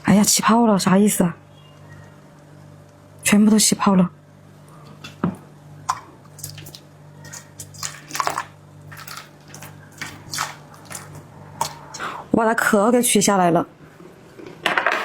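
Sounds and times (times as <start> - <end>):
wet squelches and drips: 5.9 - 12.0.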